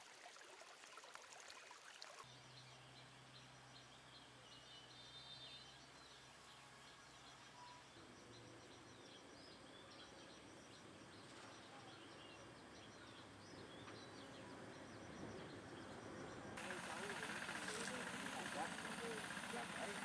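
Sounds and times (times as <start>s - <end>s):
low background hiss: 2.6s - 20.0s
birds chirping and trilling: 12.8s - 20.0s.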